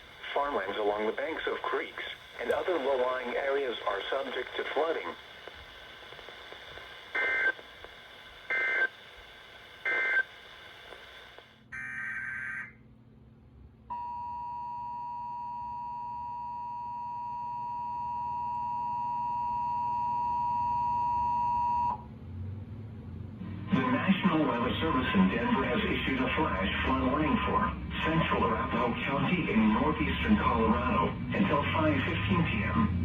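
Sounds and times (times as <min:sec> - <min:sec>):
data tone bursts: 0:05.4 - 0:09.0, 0:09.6 - 0:11.4
steady warning alarm tone: 0:08.5 - 0:08.9, 0:09.8 - 0:10.3.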